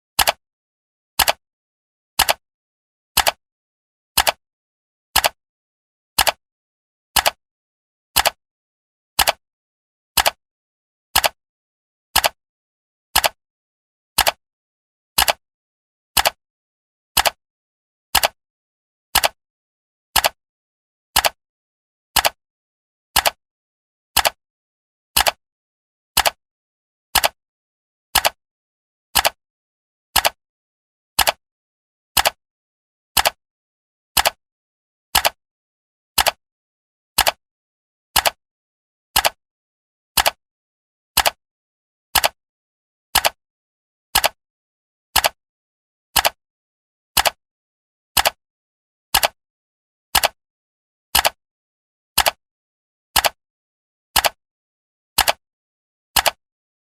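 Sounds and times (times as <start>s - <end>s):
clock ticking: 43.2s - 43.4s, 44.2s - 44.4s.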